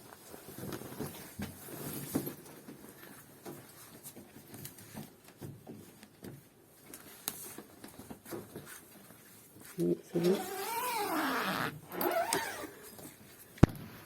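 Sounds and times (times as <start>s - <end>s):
fabric rustling: 6.7s - 13.6s.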